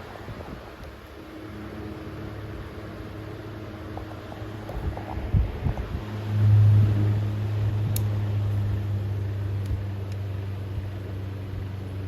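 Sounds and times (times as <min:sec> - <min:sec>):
table fan motor humming: 0:00.0 - 0:12.0
fan switch clicks: 0:07.8 - 0:08.7, 0:09.6 - 0:10.4.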